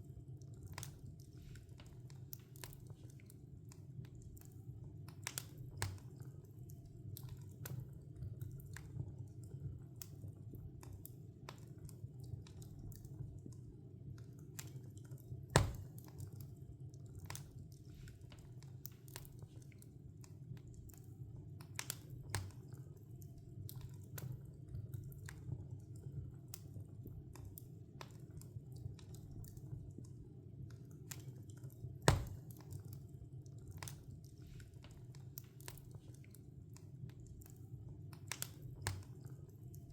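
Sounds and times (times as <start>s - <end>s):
low rumble of fire: 0.0s - 39.9s
wood fire crackling: 0.0s - 39.9s
loud fire pops: 15.6s - 16.1s, 32.1s - 32.6s.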